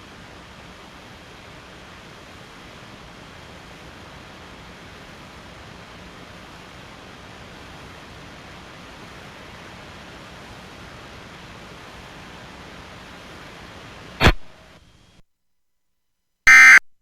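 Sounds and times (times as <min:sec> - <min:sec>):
static hiss: 0:07.7 - 0:14.8.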